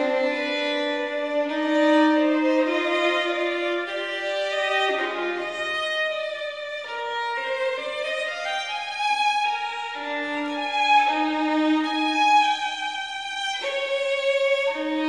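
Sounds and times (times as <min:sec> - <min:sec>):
violin held notes: 0:00.0 - 0:15.0.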